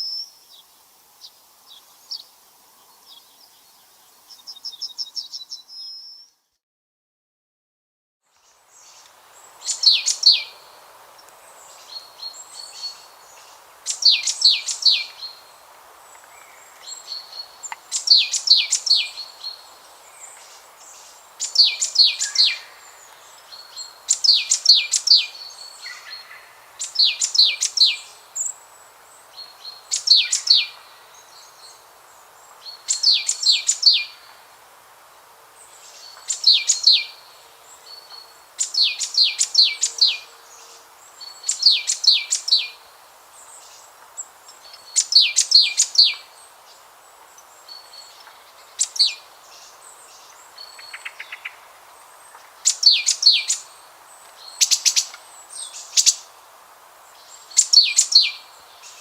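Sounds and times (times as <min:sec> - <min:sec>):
faint steady hiss: 0:00.0 - 0:06.5, 0:08.3 - 0:59.0
songbird singing: 0:00.0 - 0:06.6, 0:08.3 - 0:59.0.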